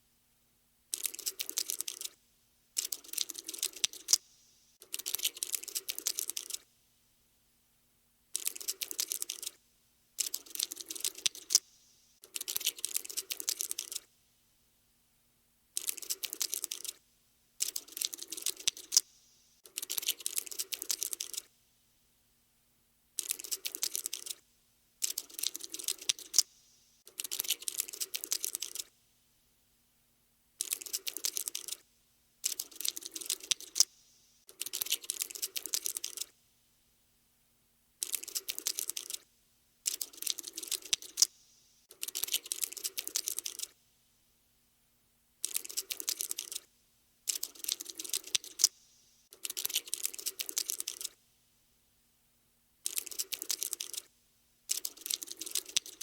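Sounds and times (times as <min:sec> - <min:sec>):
insect scuttling ticking: 0:00.9 - 0:02.2, 0:02.8 - 0:04.2, 0:04.8 - 0:06.6, 0:08.4 - 0:09.6, 0:10.2 - 0:14.1, 0:17.6 - 0:19.0, 0:19.6 - 0:21.5, 0:23.2 - 0:24.4, 0:25.0 - 0:26.5, 0:30.6 - 0:31.8, 0:32.4 - 0:33.9, 0:34.5 - 0:36.3, 0:38.0 - 0:39.2, 0:39.9 - 0:41.3, 0:41.9 - 0:43.7, 0:45.4 - 0:46.6, 0:47.3 - 0:48.7, 0:49.3 - 0:51.2, 0:52.8 - 0:54.1, 0:54.7 - 0:56.0.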